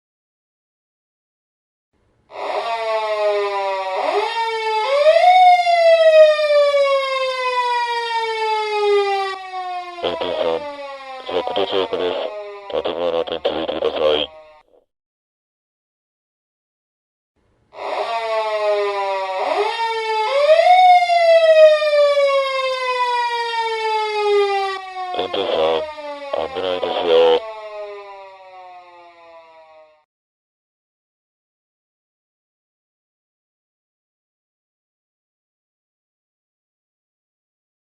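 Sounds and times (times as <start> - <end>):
police car siren wailing: 2.3 - 14.7, 17.8 - 30.0.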